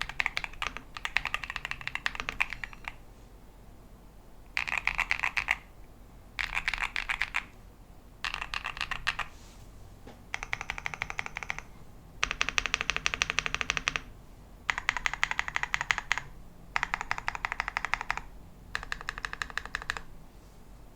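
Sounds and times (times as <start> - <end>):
mechanical keyboard typing: 0.0 - 3.0, 4.5 - 5.7, 6.4 - 7.6, 8.2 - 9.3, 10.3 - 14.1, 14.7 - 20.1.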